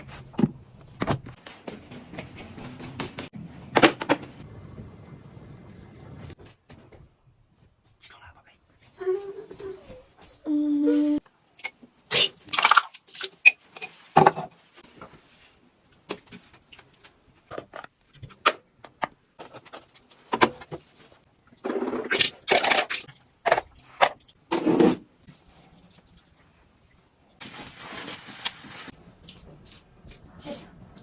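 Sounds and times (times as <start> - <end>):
scraping or rustling: 27.4 - 29.0.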